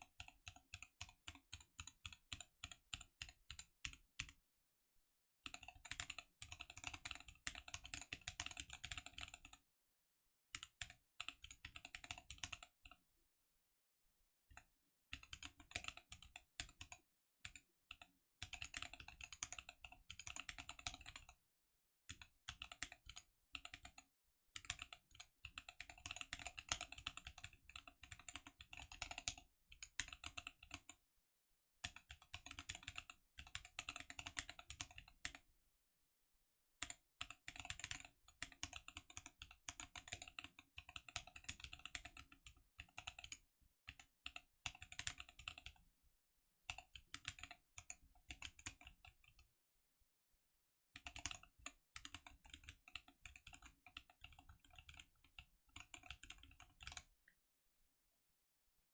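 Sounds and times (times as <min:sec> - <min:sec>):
mechanical keyboard typing: 0:05.5 - 0:09.6, 0:10.6 - 0:12.7, 0:18.4 - 0:21.3, 0:22.1 - 0:24.0, 0:24.6 - 0:30.9, 0:31.8 - 0:35.4, 0:36.8 - 0:45.8, 0:46.7 - 0:49.2, 0:51.0 - 0:57.1.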